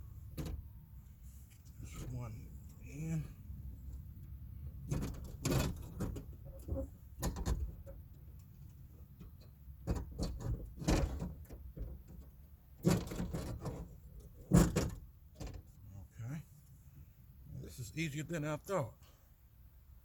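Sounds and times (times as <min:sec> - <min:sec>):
metallic knocks and rattles: 0:04.8 - 0:15.7.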